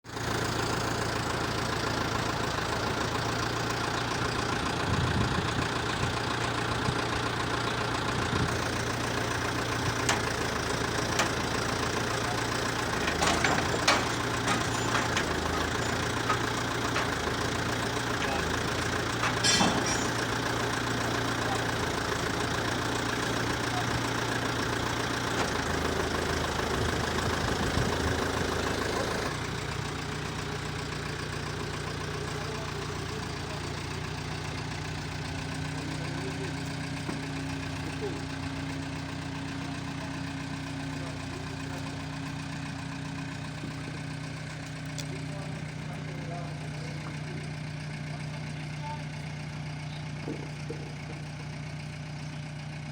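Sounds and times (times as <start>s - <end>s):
engine running: 0.0s - 52.9s
sharp clicks and knocks: 9.9s - 12.0s, 12.9s - 18.4s.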